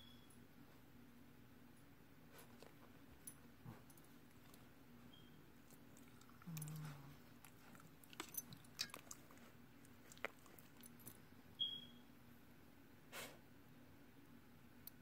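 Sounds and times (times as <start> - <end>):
mouth smacks: 5.7 - 11.0
puppy snoring softly: 5.9 - 8.4.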